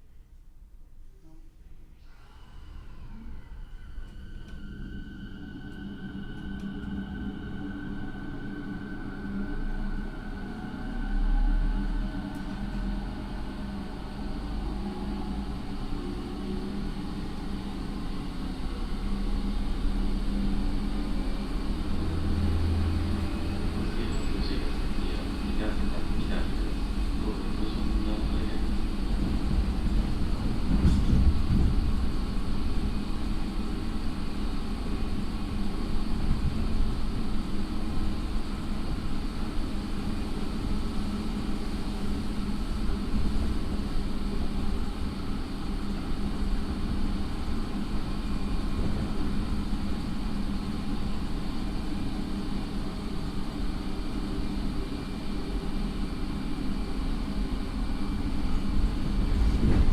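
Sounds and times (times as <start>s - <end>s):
train wheels rumbling: 2.5s - 59.9s.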